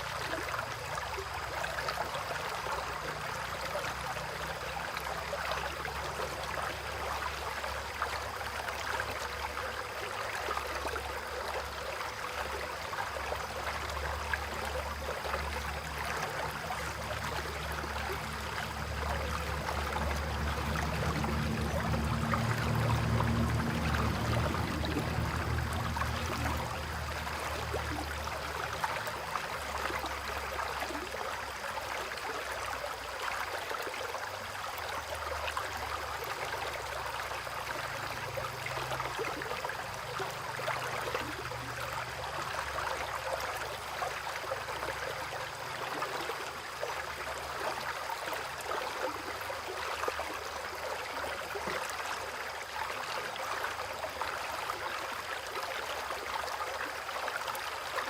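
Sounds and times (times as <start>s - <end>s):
stream flowing: 0.0s - 58.0s
rain patter: 14.6s - 31.6s.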